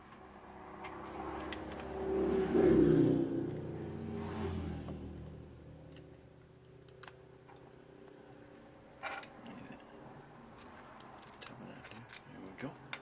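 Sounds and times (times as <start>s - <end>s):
vehicle passing: 0.0s - 6.0s
low hum: 0.3s - 6.2s
small tools clicking: 5.9s - 7.2s, 10.6s - 12.3s.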